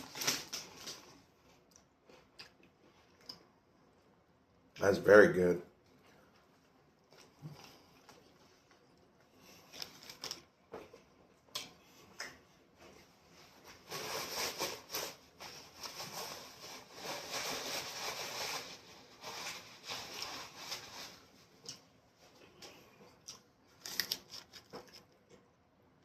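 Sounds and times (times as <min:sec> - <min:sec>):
crunchy chewing of chips: 0:07.0 - 0:11.7, 0:22.6 - 0:25.5.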